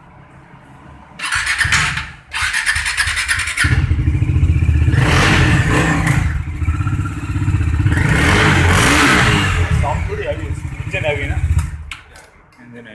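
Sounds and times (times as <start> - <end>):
motorcycle engine running: 3.6 - 11.8.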